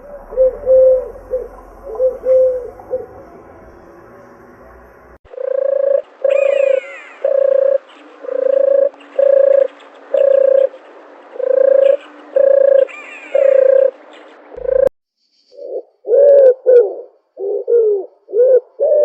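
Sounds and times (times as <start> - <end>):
dove cooing: 0.0 - 3.2, 5.3 - 14.0, 14.6 - 14.9, 15.6 - 19.0
higher falling bird call: 0.0 - 3.2, 5.3 - 10.8, 11.4 - 14.0.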